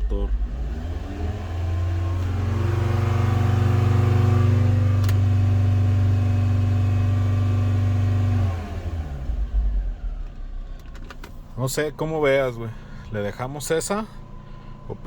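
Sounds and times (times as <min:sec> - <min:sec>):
car engine revving: 0:00.0 - 0:10.6
click: 0:05.0 - 0:05.2.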